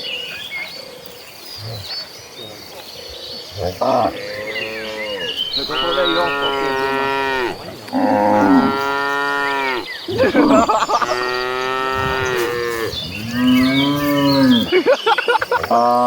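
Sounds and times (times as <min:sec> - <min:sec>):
cattle mooing: 0:03.6 - 0:14.7.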